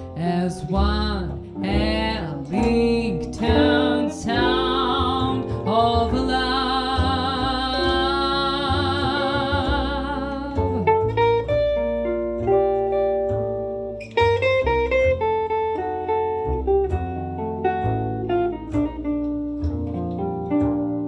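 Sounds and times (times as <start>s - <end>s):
bass: 0.0s - 21.0s
jazz guitar solo: 0.0s - 21.0s
woman singing with vibrato: 0.2s - 11.5s.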